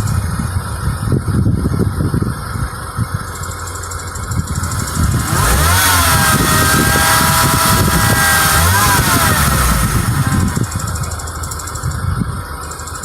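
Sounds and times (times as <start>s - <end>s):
car engine running: 0.0s - 13.0s
engine ticking: 0.0s - 13.0s
whine: 4.5s - 13.0s.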